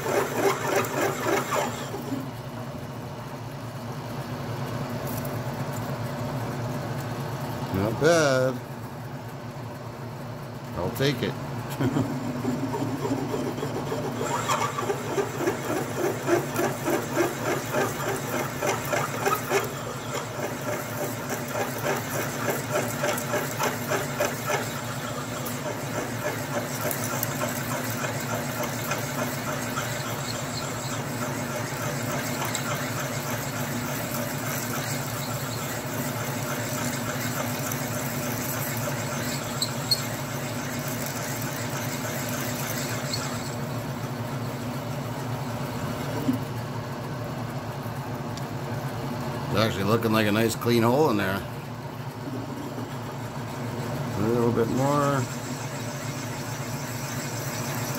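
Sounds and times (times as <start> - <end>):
metal lathe drilling steel: 0.0 - 2.1, 12.5 - 43.8, 54.1 - 57.9.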